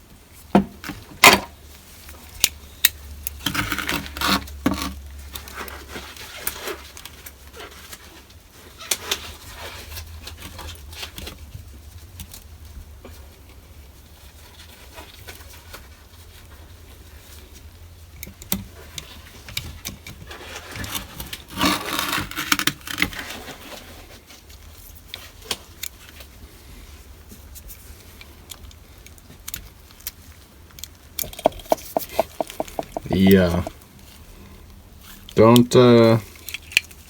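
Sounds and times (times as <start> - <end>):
hand tools clicking and tapping: 31.2 - 33.7
scraping and rubbing: 31.2 - 33.8.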